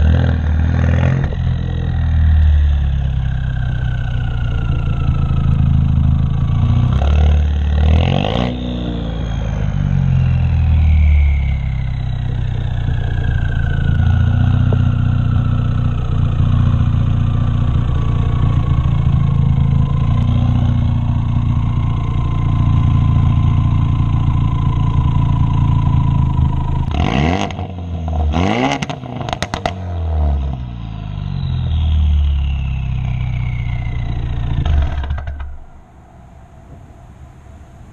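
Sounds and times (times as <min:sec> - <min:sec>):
engine revving: 0:00.0 - 0:35.9
car exhaust drone: 0:00.0 - 0:37.9
exhaust pops: 0:12.0 - 0:27.7, 0:33.0 - 0:35.8.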